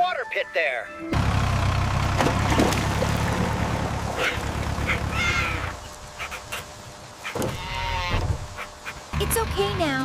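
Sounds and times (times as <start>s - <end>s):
cartoon tractor engine rumble: 1.1s - 5.9s
short animal calls: 7.2s - 9.0s.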